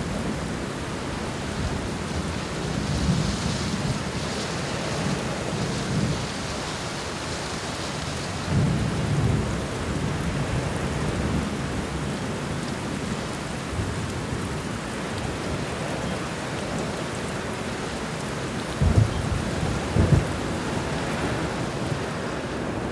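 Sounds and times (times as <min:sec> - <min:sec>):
heavy rain pouring: 0:00.0 - 0:22.9
thunder rumbling and booming: 0:18.7 - 0:22.1.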